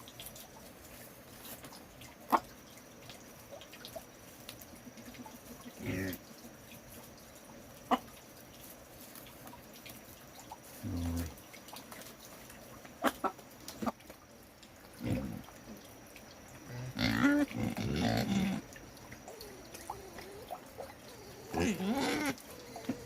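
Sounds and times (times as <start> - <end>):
pigs grunting: 5.7 - 6.2, 10.8 - 11.4, 15.0 - 15.5, 16.6 - 23.0.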